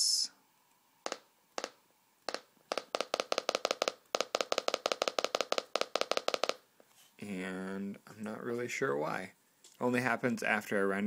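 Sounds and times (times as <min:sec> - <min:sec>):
distorted laptop speaker pops: 0:01.0 - 0:06.6.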